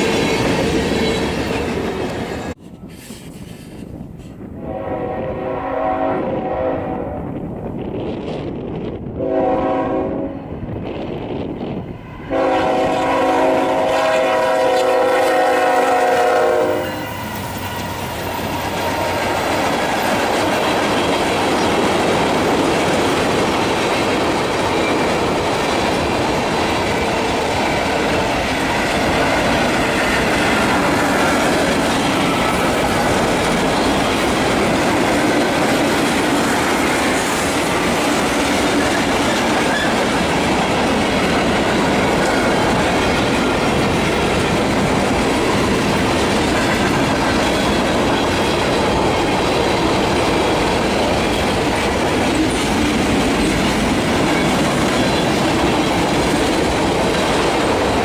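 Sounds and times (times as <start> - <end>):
train rolling past: 0.0 - 58.0
locomotive horn chord: 4.6 - 7.2, 9.2 - 10.5, 12.3 - 17.0.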